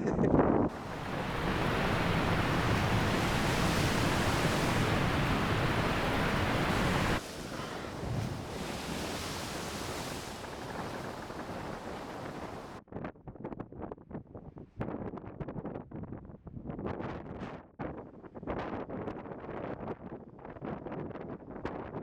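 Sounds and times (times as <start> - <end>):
seawater surging and rushing: 0.7 - 12.8
wind buffeting microphone: 0.7 - 12.8.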